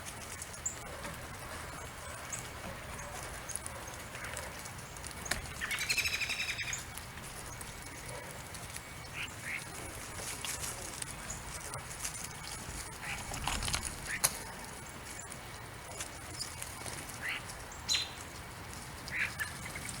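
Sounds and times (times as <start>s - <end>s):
bird chirps: 5.2s - 6.9s, 17.2s - 18.2s
bird chattering call: 5.3s - 6.9s.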